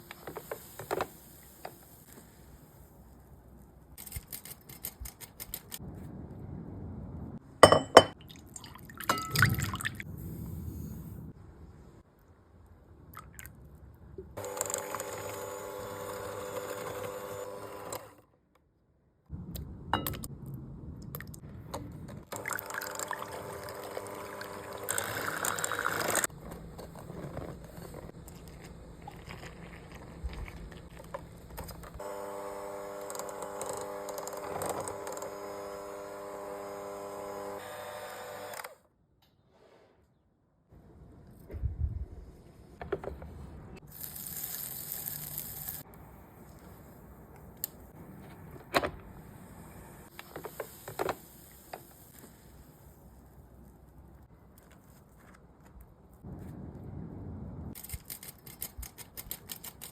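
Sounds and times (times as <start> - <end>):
electric mixer whining: 14.4 - 18.0, 32.0 - 38.7
clattering and handling noises: 53.8 - 56.6.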